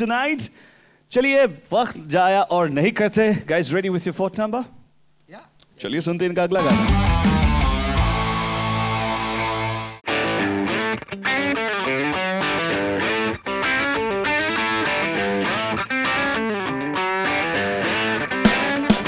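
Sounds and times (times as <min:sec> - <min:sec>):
electric guitar playing: 0:06.6 - 0:19.0.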